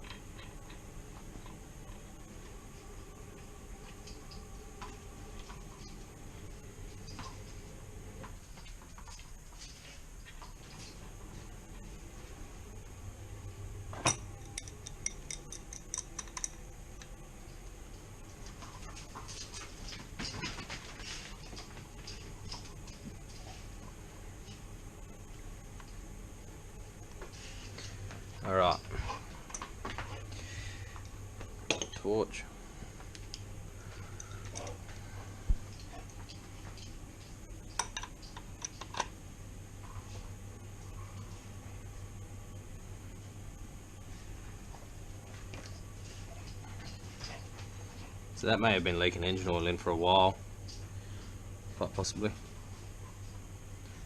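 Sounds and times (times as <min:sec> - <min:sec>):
steady low hum: 0:00.0 - 0:54.0
metal tools clicking and tapping: 0:14.0 - 0:17.1, 0:31.7 - 0:32.0.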